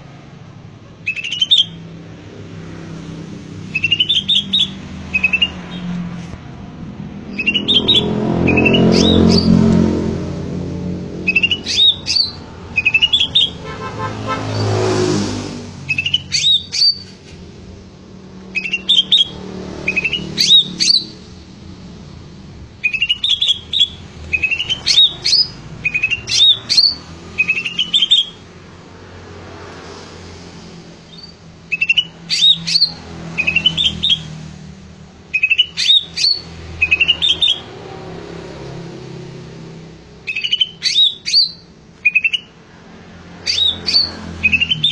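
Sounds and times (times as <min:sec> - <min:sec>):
motor vehicle passing: 0:00.0 - 0:44.9
bird sliding whistled notes: 0:07.3 - 0:09.6, 0:11.3 - 0:13.5.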